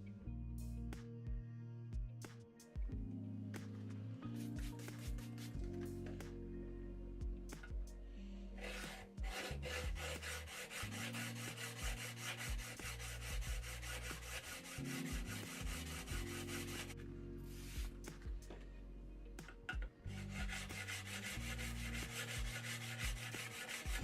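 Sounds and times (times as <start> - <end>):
background music: 0.0 - 24.0
chisel rubbing on sharpening plate: 8.6 - 17.0, 20.1 - 24.0.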